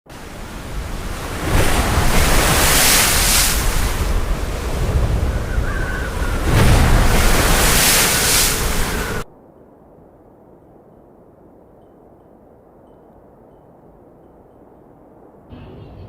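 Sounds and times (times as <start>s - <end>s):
strong wind buffeting microphone: 0.1s - 9.3s.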